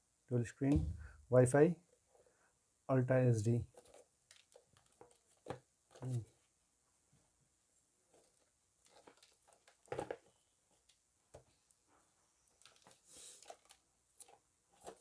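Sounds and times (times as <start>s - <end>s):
loud knock: 0.7s - 1.2s
packaging taps and rustles: 3.7s - 6.2s, 8.1s - 11.5s, 12.6s - 15.0s.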